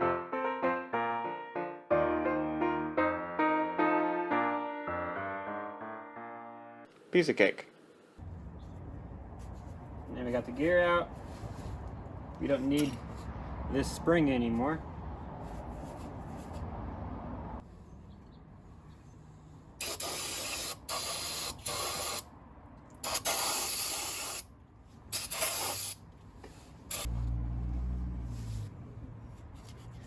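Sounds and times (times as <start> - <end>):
aerosol spray hissing: 19.8 - 22.2, 23.0 - 24.4, 25.2 - 26.0.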